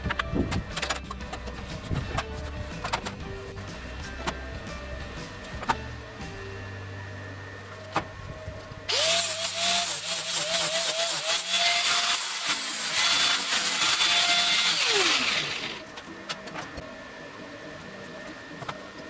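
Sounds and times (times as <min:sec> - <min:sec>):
power tool motor whine: 0:08.9 - 0:15.9.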